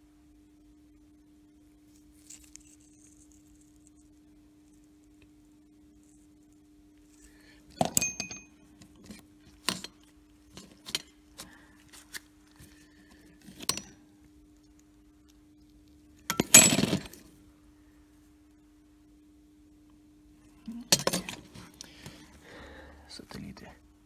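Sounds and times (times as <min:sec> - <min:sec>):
steel parts clinking: 0:07.8 - 0:11.1, 0:16.3 - 0:17.2, 0:20.8 - 0:21.5
metal parts rattling: 0:16.3 - 0:17.2, 0:20.9 - 0:21.5.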